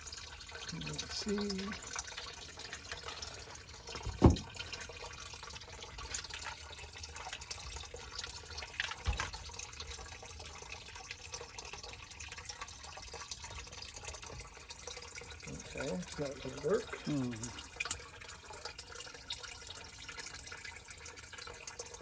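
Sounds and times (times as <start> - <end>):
water trickling and dripping: 0.0 - 22.0
sharp knocks: 4.0 - 4.5.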